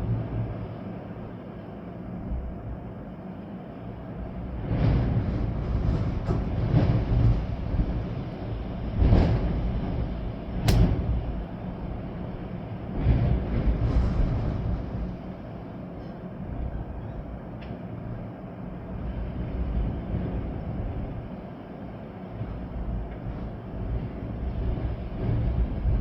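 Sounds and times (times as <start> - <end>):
rain: 0.0 - 26.0
storm wind through trees: 0.0 - 26.0
sharp knock: 10.7 - 11.0.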